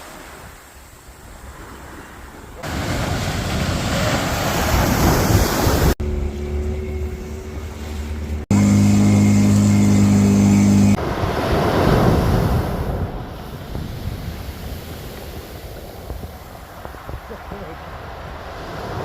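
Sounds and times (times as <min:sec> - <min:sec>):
sea surf: 0:00.0 - 0:19.0
wind noise: 0:01.4 - 0:06.1, 0:10.9 - 0:19.0
steady mechanical drone: 0:06.0 - 0:11.1.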